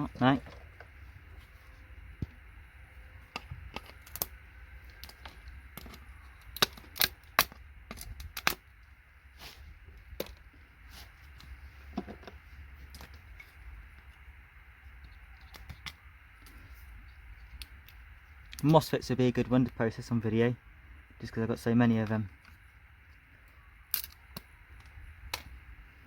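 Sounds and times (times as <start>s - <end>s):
small hard objects clicking: 3.3s - 8.6s, 23.8s - 25.6s.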